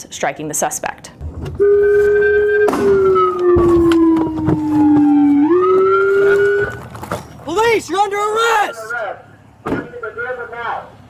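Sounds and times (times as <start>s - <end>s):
police siren: 1.5s - 7.0s.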